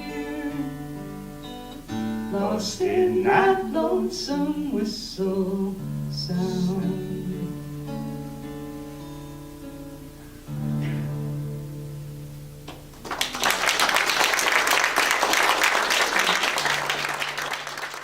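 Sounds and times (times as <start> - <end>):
audience applause: 12.7 - 18.0.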